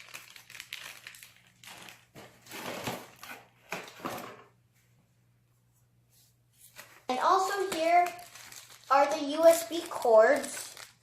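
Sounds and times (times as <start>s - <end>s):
packaging crinkling and rustling: 0.0s - 4.4s, 6.8s - 11.0s.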